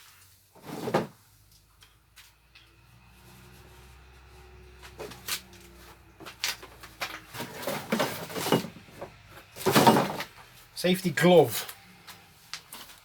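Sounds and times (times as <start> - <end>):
clatter of objects being moved: 0.0 - 2.8, 4.8 - 10.6.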